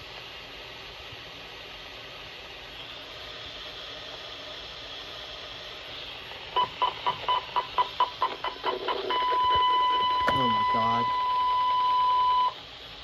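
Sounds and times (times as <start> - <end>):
radio static hiss: 2.7 - 13.0
rapid short beeps: 9.1 - 12.5.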